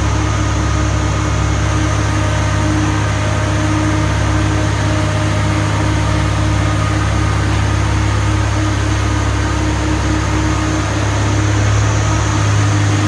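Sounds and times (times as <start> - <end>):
excavator diesel engine droning: 0.0 - 13.0.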